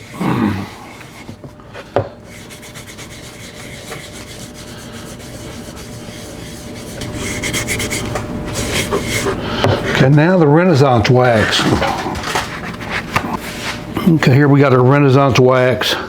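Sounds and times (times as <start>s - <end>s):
pad scrubbing wood: 2.3s - 10.2s.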